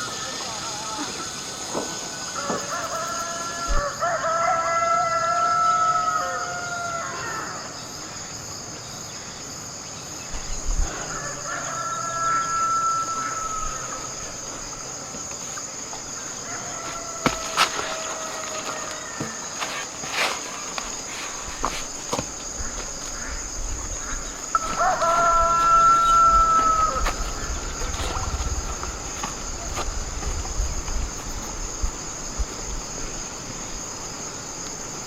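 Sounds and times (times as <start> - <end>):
insect drone: 0.0 - 35.0
rooster crowing: 2.3 - 7.6, 10.9 - 14.2, 16.4 - 19.5, 24.5 - 28.2.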